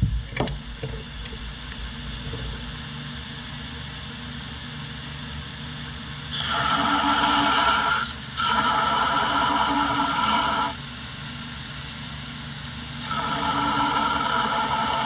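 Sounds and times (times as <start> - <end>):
electric machine motor running: 6.3 - 10.8, 13.0 - 15.0.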